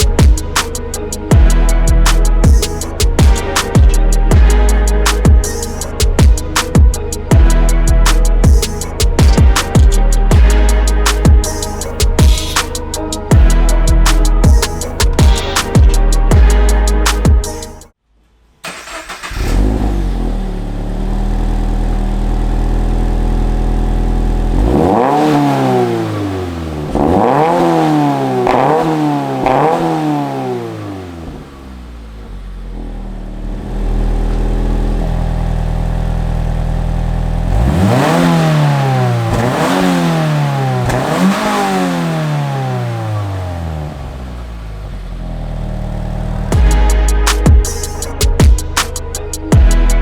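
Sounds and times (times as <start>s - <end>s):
car engine idling: 0.0s - 17.8s, 18.6s - 50.0s
engine revving in quick blips: 18.6s - 21.9s, 24.4s - 31.9s, 37.3s - 44.2s.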